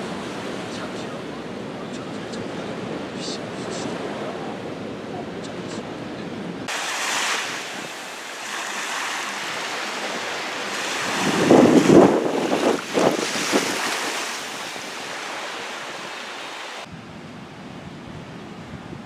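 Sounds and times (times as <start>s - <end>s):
ocean surf washing on beach: 0.0s - 19.0s
wind buffeting microphone: 9.2s - 19.0s.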